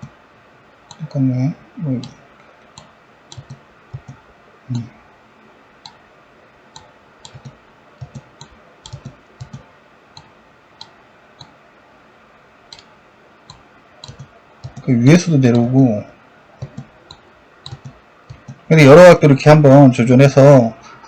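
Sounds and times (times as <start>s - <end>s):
computer mouse clicking: 0.9s - 1.1s, 2.0s - 4.9s, 5.8s - 6.0s, 6.7s - 11.6s, 12.7s - 14.9s, 16.6s - 18.7s.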